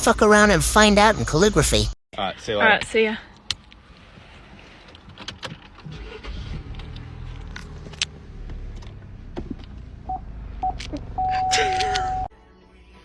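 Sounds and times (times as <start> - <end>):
car engine running: 5.0 - 12.3
short beeps: 10.1 - 12.3.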